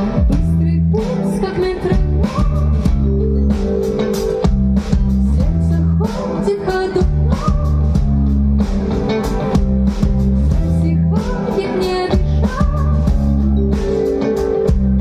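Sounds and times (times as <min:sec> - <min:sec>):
live band playing: 0:00.0 - 0:15.0.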